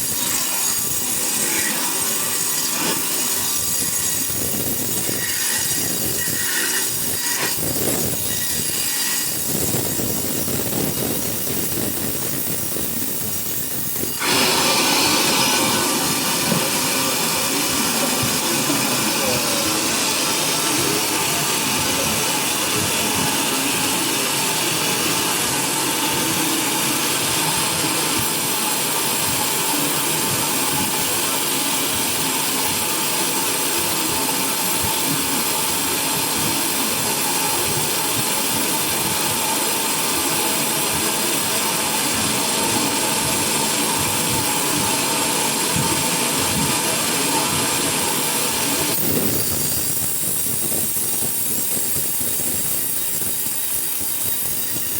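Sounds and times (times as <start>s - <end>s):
sawmill machinery running: 0.0s - 54.9s.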